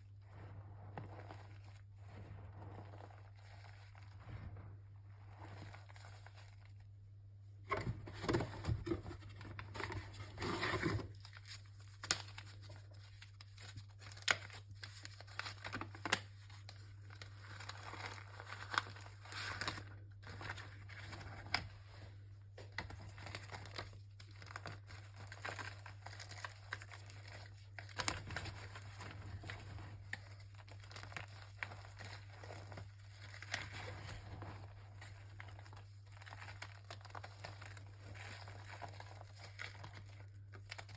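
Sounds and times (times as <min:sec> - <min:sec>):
chalk crunching and crumbling: 0:00.0 - 0:06.8, 0:23.3 - 0:40.9.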